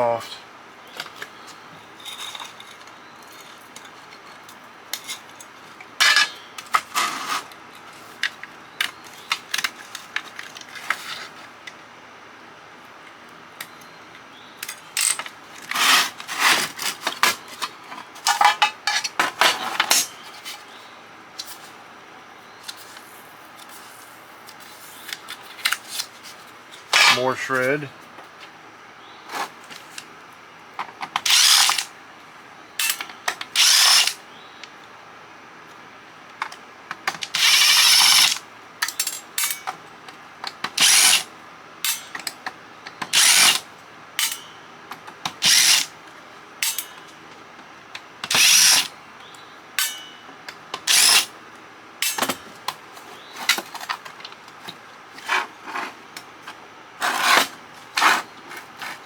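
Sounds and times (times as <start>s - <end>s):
metal parts clicking: 31.2s - 31.9s, 40.7s - 42.3s, 43.1s - 43.6s, 44.2s - 44.5s, 45.4s - 45.9s, 46.6s - 47.0s, 48.2s - 48.9s, 50.8s - 51.3s, 52.0s - 52.4s
power screwdriver running: 31.2s - 31.9s, 33.6s - 34.2s, 37.4s - 38.4s, 40.8s - 41.3s, 43.2s - 43.6s, 45.4s - 45.9s, 48.3s - 48.9s, 50.9s - 51.3s.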